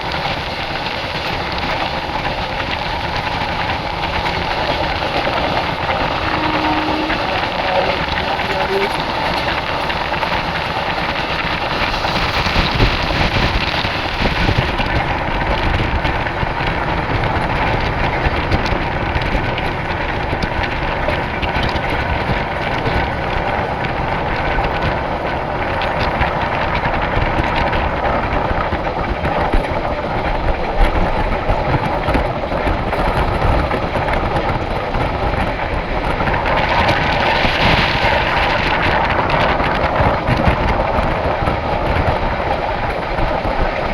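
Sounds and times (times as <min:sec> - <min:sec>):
train rumbling on track: 0:00.0 - 0:43.9.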